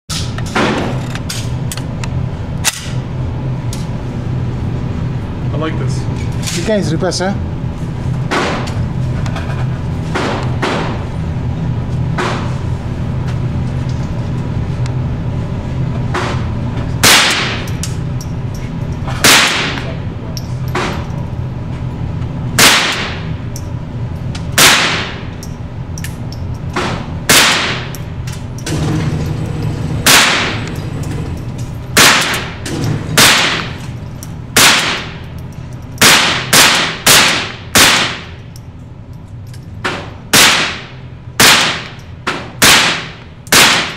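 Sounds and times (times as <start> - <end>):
loud gunshots: 17.0 - 17.7, 19.2 - 19.8, 22.6 - 23.3, 24.6 - 25.2, 27.3 - 27.9, 30.0 - 30.6, 32.0 - 32.6, 33.2 - 33.8, 34.6 - 35.2, 36.0 - 38.3, 40.3 - 42.0, 42.6 - 43.9
distant gunshots: 30.1 - 30.6, 36.0 - 38.3, 42.6 - 43.9.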